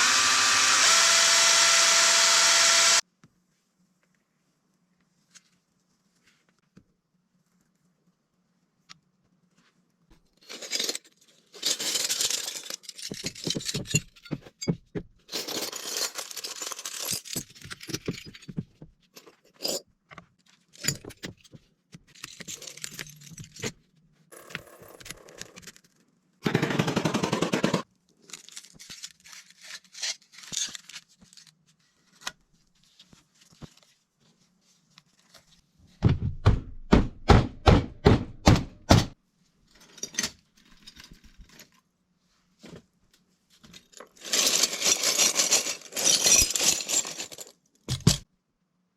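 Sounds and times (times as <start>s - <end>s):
scraping and clattering: 43.6s - 48.2s.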